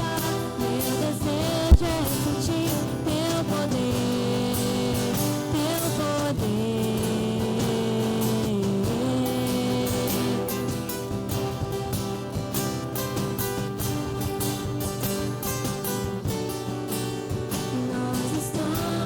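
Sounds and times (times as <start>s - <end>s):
gliding guitar melody: 0.0s - 19.0s
worship band music: 0.0s - 19.0s
low thump: 1.7s - 2.3s.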